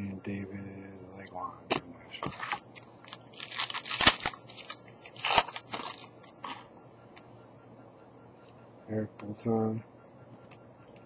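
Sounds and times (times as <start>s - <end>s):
trading cards crackling and snapping: 1.7s - 6.7s.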